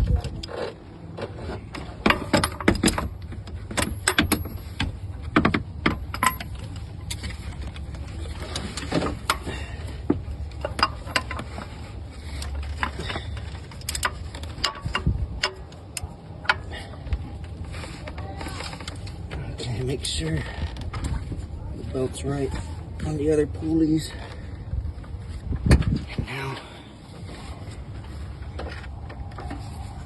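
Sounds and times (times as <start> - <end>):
metallic clicks and clinks of tools: 5.9 - 7.3.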